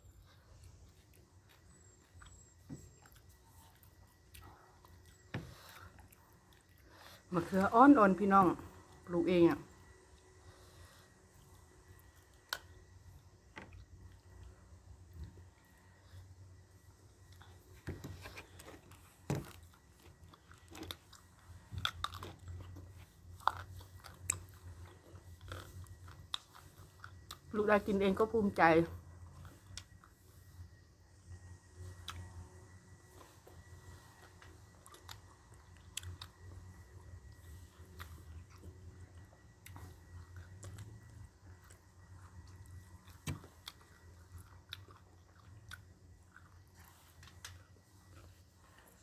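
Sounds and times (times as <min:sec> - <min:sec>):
low steady hum: 0:00.0 - 0:49.0
person chewing and crunching food: 0:00.0 - 0:49.0.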